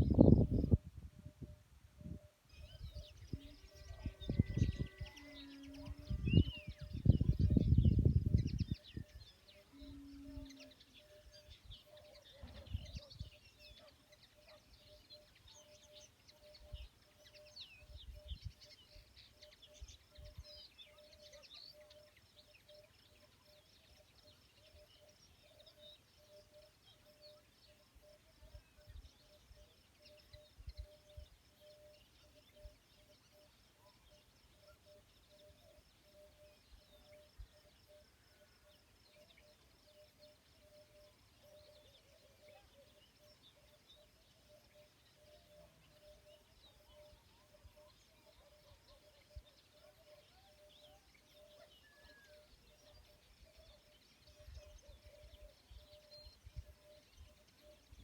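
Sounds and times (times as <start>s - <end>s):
faint pulsing tone: 0.0s - 58.0s
small birds chirping: 0.0s - 58.0s.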